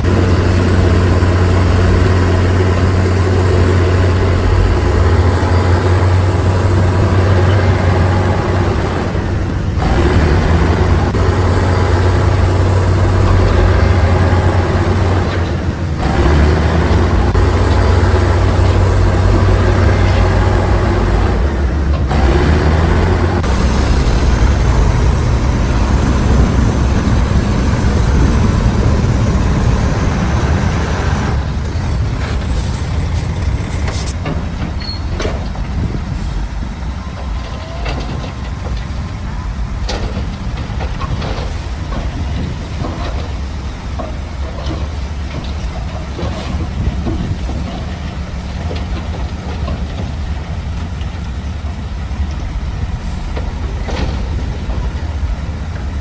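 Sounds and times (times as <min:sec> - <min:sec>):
diesel machinery engine drone: 0:00.0 - 0:56.0
knocks and rattles: 0:09.8 - 0:36.0, 0:37.1 - 0:51.4, 0:53.3 - 0:55.3.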